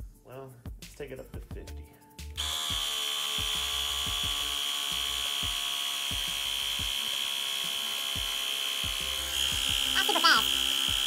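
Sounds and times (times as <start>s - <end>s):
air compressor running with whine: 2.4s - 11.0s.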